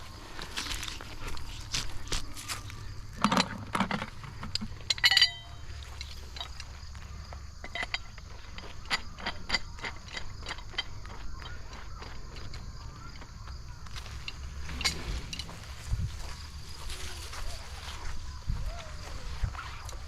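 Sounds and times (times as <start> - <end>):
metal hardware clicking: 3.2 - 6.7
bright metallic jangle: 4.8 - 6.7.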